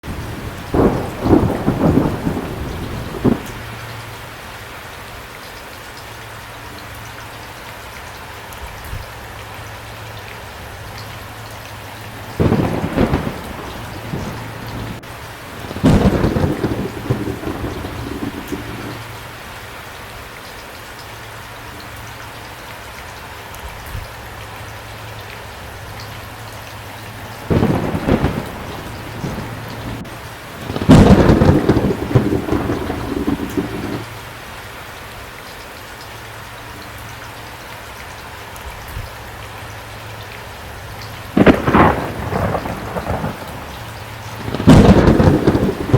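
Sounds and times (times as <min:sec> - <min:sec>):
thunder rumbling: 0:00.0 - 0:04.0, 0:12.1 - 0:19.1, 0:27.2 - 0:34.1, 0:41.4 - 0:45.9
rain hissing: 0:00.0 - 0:04.3, 0:11.8 - 0:19.2, 0:26.8 - 0:34.2, 0:41.2 - 0:45.9.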